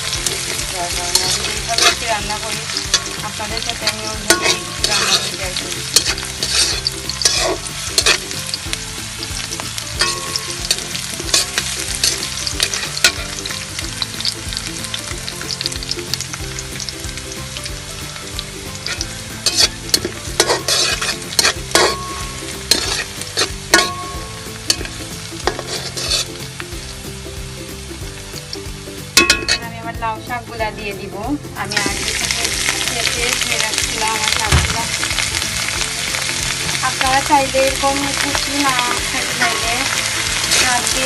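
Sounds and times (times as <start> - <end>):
utensil scraping and knocking pan: 0.0 - 8.5, 10.0 - 13.6, 18.8 - 26.5
vegetables sizzling in oil: 0.0 - 41.0.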